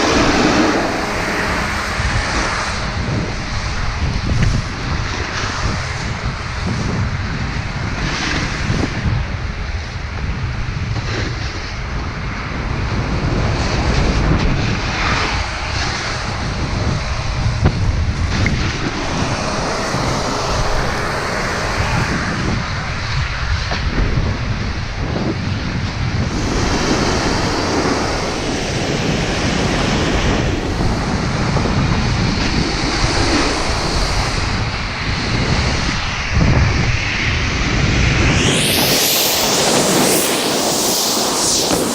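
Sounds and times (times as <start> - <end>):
snowboard scraping over snow: 0.0 - 6.0, 26.2 - 34.6, 37.9 - 41.9
wind buffeting microphone: 0.0 - 41.9.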